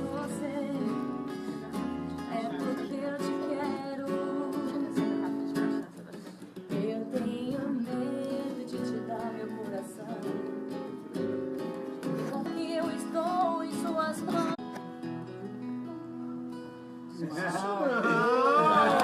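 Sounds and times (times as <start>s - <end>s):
person singing: 0.0s - 5.9s, 6.6s - 10.8s
acoustic guitar strumming: 0.0s - 17.4s.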